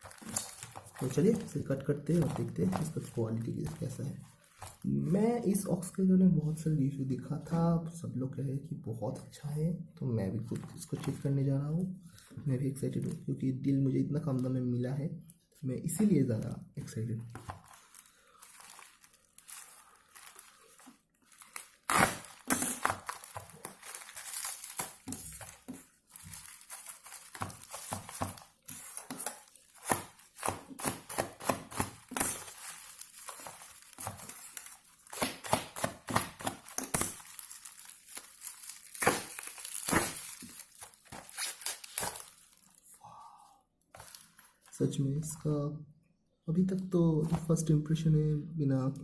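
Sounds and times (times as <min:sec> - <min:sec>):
packaging being torn and crinkled: 0:00.0 - 0:03.8, 0:17.6 - 0:42.9.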